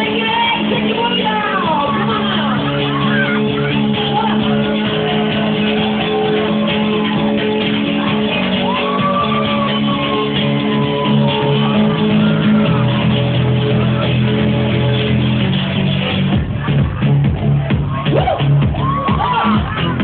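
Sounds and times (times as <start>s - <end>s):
club music with held chords: 0.0s - 20.0s
woman wailing: 1.6s - 4.5s.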